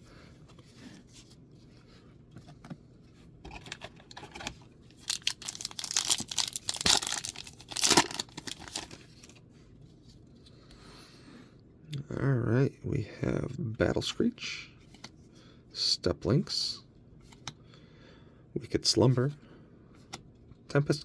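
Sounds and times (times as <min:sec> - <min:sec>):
wrapper being torn and crinkled: 0:04.9 - 0:09.4.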